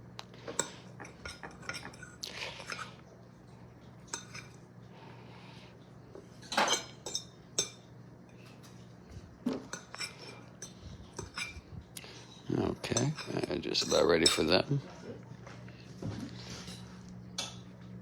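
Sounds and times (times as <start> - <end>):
steady low hum: 0.0 - 18.0
dishes and cutlery clinking: 0.4 - 2.9, 4.0 - 4.6, 6.2 - 8.8, 9.4 - 15.1.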